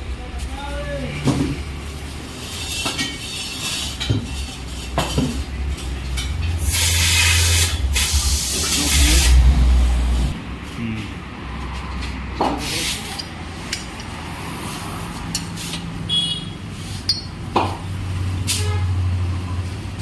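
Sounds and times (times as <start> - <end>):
compressed air hissing: 6.6 - 10.4
low rumble: 7.5 - 10.4.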